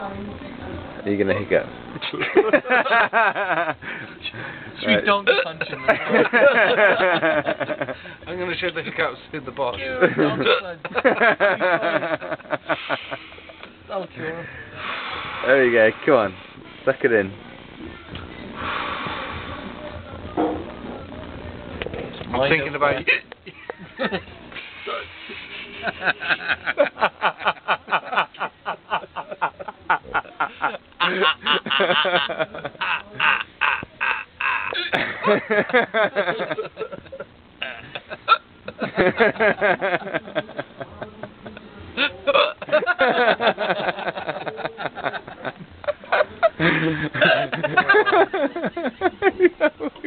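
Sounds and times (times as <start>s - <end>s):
person laughing hard: 25.8s - 40.1s, 42.0s - 49.7s
man hiccuping: 42.0s - 42.6s.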